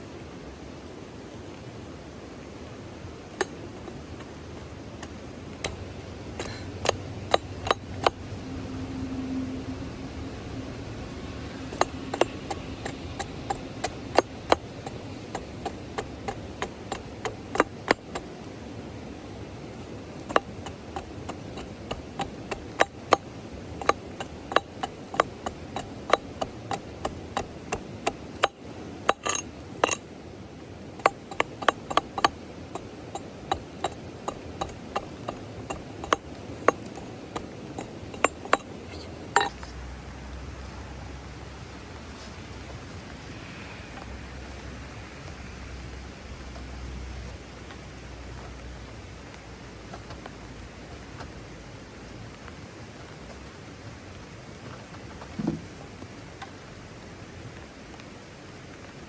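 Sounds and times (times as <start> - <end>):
steady hiss: 0.0 - 59.0
sharp clicks and knocks: 3.3 - 8.4, 10.7 - 30.2, 30.8 - 40.9.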